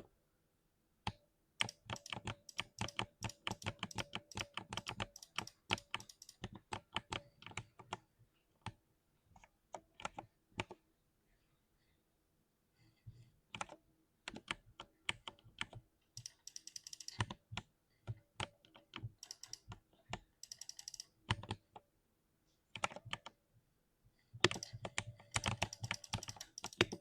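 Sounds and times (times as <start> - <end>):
keyboard key clacks: 24.4 - 27.0.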